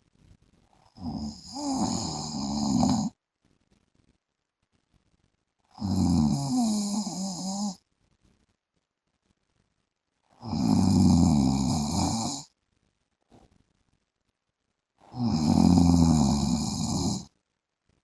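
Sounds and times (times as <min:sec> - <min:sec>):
man snoring: 0:00.9 - 0:03.1, 0:05.8 - 0:07.8, 0:10.4 - 0:12.5, 0:15.1 - 0:17.3.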